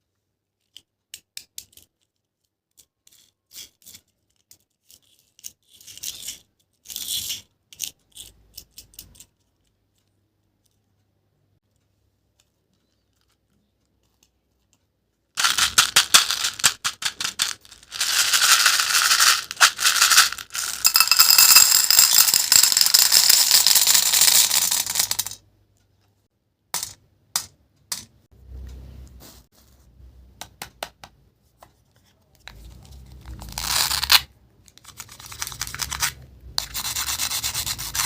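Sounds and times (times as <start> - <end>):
crunchy crackling and rattling: 15.4 - 25.4.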